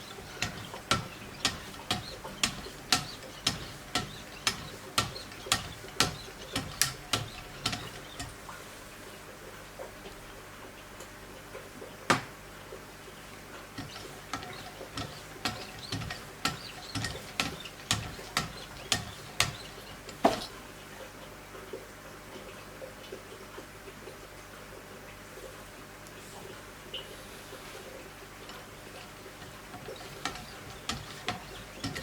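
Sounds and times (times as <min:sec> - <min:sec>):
light clicks and ticks: 0:00.0 - 0:08.4.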